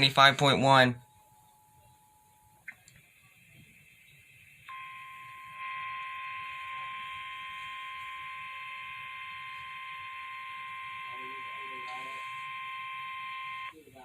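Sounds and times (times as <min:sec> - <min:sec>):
loud steady electronic tone: 0:00.0 - 0:02.7, 0:04.4 - 0:13.8
faint high tone: 0:04.7 - 0:13.8.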